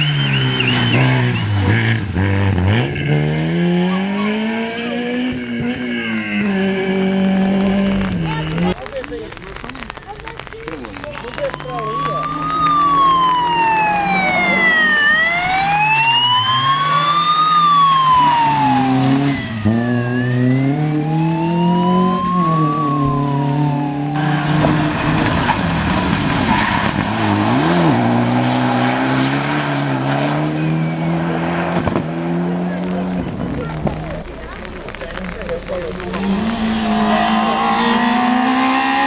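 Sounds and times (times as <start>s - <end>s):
vehicle siren wailing: 3.9s - 8.8s, 11.3s - 31.6s, 36.1s - 39.0s
car engine running: 30.9s - 38.6s.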